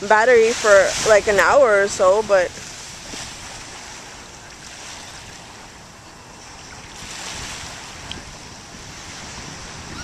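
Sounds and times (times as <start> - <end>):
ocean waves washing on beach: 0.0 - 10.0
wind buffeting microphone: 0.0 - 10.0.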